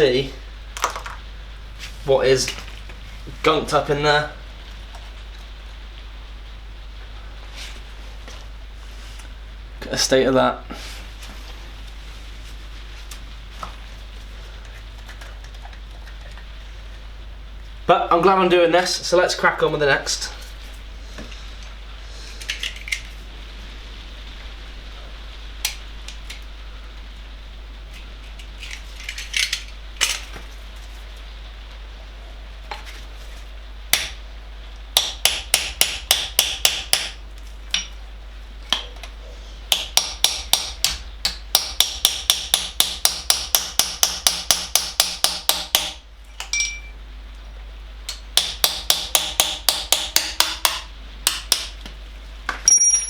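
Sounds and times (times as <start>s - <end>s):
hammer striking metal tool: 39.7s - 46.9s, 48.4s - 51.7s.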